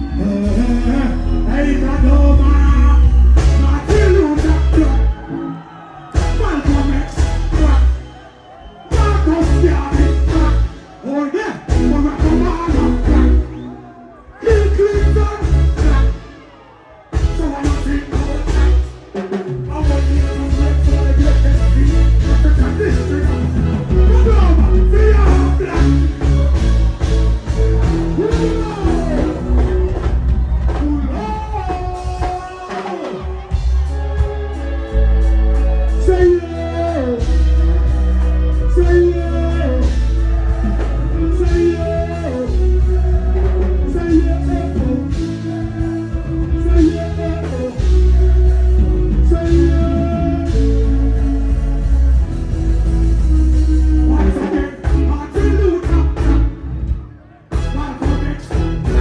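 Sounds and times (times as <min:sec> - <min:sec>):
heavy bass line: 0:00.0 - 0:05.3, 0:06.2 - 0:08.2, 0:08.9 - 0:11.0, 0:11.6 - 0:13.8, 0:14.5 - 0:16.4, 0:17.2 - 0:59.0
dancehall reggae music: 0:00.0 - 0:59.0
person singing: 0:33.8 - 0:52.3, 0:53.1 - 0:56.4.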